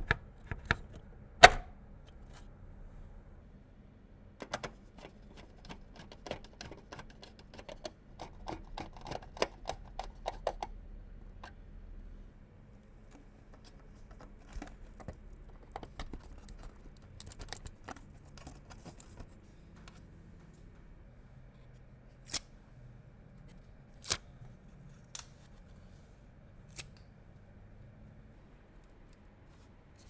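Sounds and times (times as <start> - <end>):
small clicks snips and rustles: 13.0 - 20.1.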